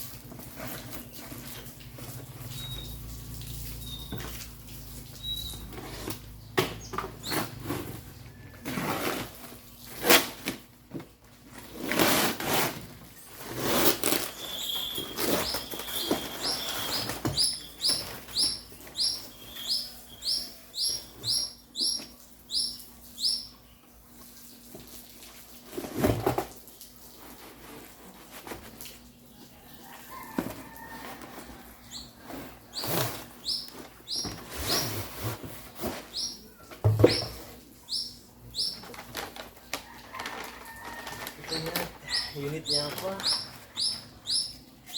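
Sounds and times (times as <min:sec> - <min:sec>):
bird chirping: 0:02.5 - 0:03.2, 0:03.8 - 0:04.3, 0:05.1 - 0:05.8, 0:14.3 - 0:23.9, 0:31.8 - 0:35.0, 0:35.8 - 0:39.0, 0:41.5 - 0:44.9
rustling and knocks of handling: 0:30.3 - 0:37.8.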